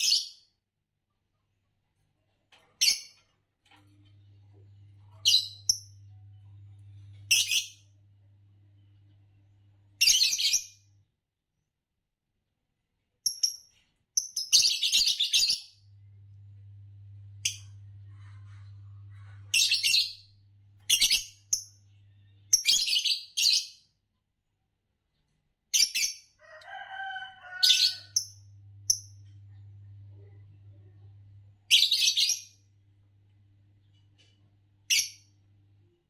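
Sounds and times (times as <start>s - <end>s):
steady low hum: 15.8s - 19.6s, 28.4s - 31.7s.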